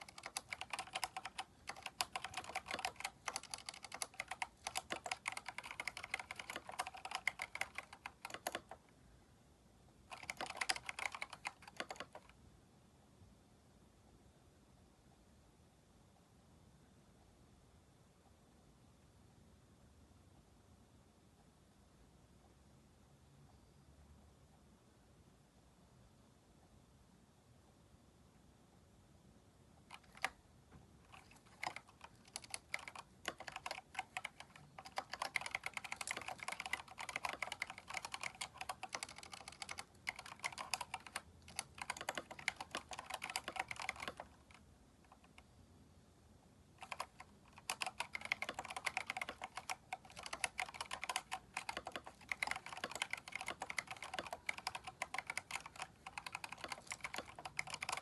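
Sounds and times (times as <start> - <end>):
mechanical keyboard typing: 0.0 - 8.8, 10.1 - 12.4, 29.9 - 30.4, 31.1 - 45.5, 46.8 - 58.0.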